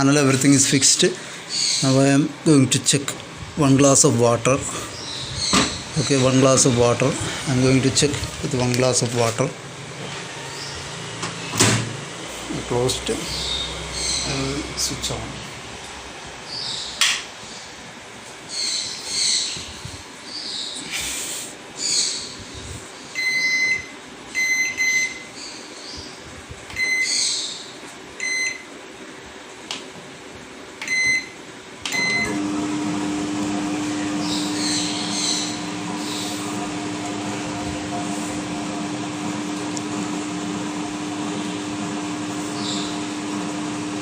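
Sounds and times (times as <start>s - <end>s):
microwave humming with fan: 0.0s - 17.0s, 23.1s - 25.3s, 30.7s - 44.0s
microwave keypad beeps: 23.2s - 25.3s, 26.8s - 27.1s, 28.2s - 28.7s, 30.8s - 31.4s, 32.0s - 32.4s.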